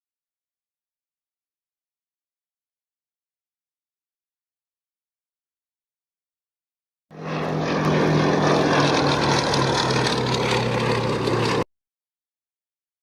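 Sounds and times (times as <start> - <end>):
propeller aircraft droning: 7.1 - 11.7.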